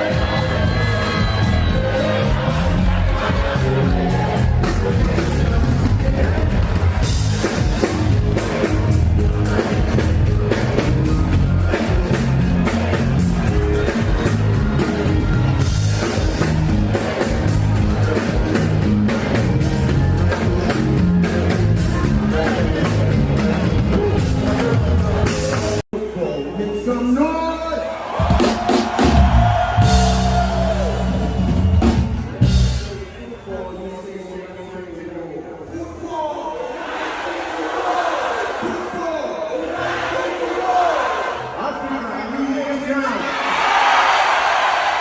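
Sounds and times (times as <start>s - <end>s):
live band concert music: 0.0s - 36.0s.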